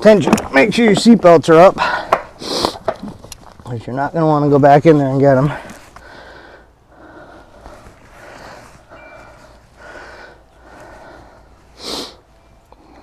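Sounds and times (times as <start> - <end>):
person breathing: 5.5 - 12.2.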